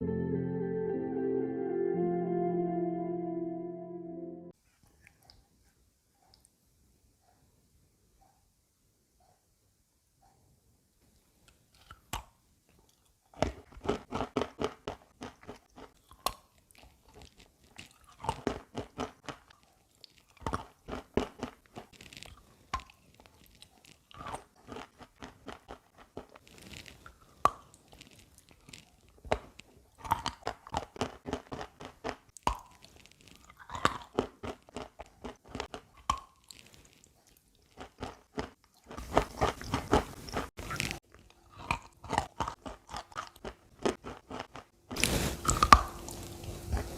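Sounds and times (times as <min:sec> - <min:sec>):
chalk crunching being chewed: 0:13.0 - 0:46.9.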